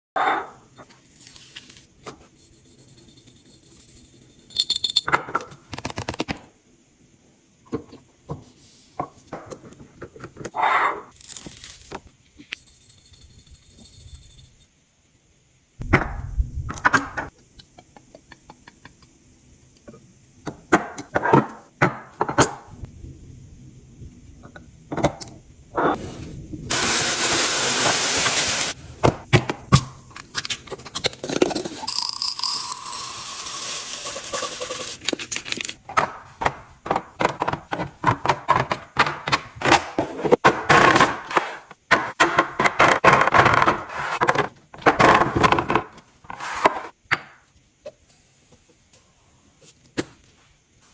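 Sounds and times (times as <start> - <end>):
rushing noise: 26.0 - 28.8
containers clicking and knocking: 31.0 - 39.4.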